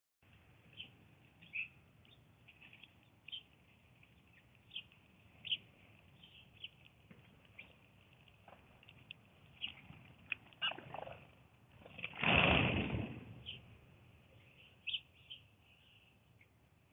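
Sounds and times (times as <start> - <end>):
blue jay chirping: 0.7 - 6.9, 9.4 - 10.9, 14.4 - 16.1.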